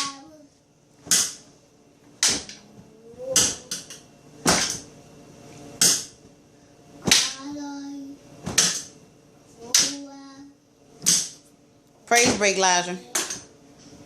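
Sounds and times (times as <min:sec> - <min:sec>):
hand slapping refrigerator door: 0:03.3 - 0:04.9, 0:07.0 - 0:07.5.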